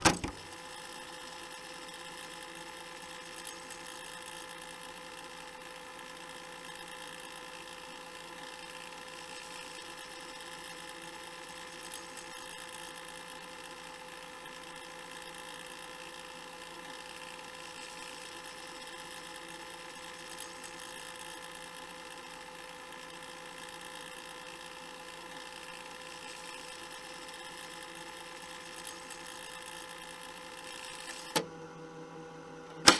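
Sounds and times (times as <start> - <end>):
cassette player click: 0.0 - 0.6, 30.9 - 31.6.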